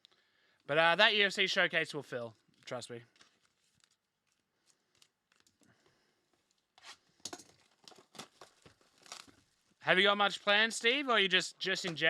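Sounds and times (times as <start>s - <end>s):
foil wrappers tearing and crinkling: 3.2s - 5.6s, 6.9s - 9.8s.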